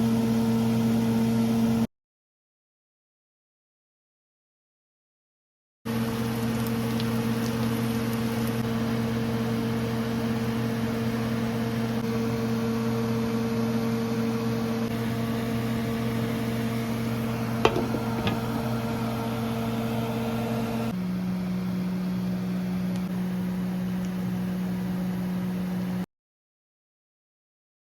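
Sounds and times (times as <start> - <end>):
kitchen appliance motor humming: 5.9 - 20.9.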